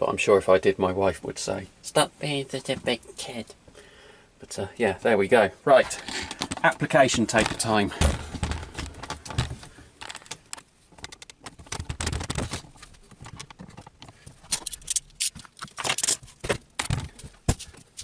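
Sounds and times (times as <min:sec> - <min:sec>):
tape crackling and scraping: 0:05.9 - 0:18.0.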